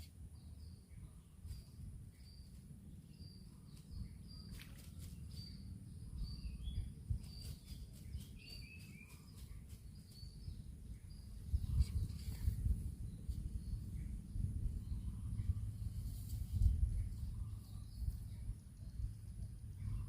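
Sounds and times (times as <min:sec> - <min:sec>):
bird chirping: 0:00.0 - 0:20.0
steady low rumble: 0:00.2 - 0:20.0.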